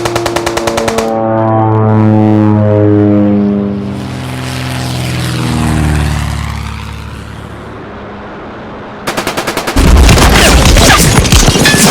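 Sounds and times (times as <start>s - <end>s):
rapid machine-gun burst: 0.0s - 1.1s, 9.1s - 11.9s
model plane propeller drone: 0.0s - 8.8s.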